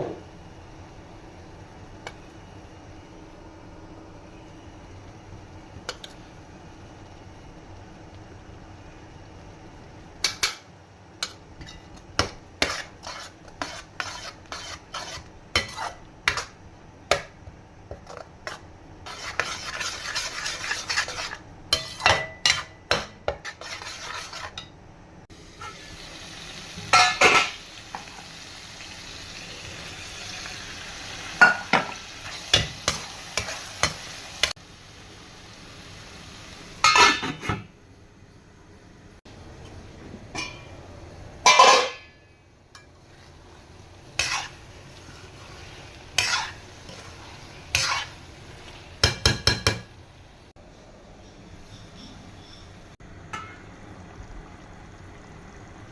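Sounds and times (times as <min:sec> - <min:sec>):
oil sizzling: 0:00.1 - 0:50.6, 0:51.2 - 0:55.9
utensil tapping and scraping pan: 0:11.2 - 0:24.7, 0:44.2 - 0:44.6, 0:46.1 - 0:47.1, 0:47.7 - 0:48.2, 0:49.0 - 0:49.9
metal knocks on pan: 0:49.0 - 0:49.9.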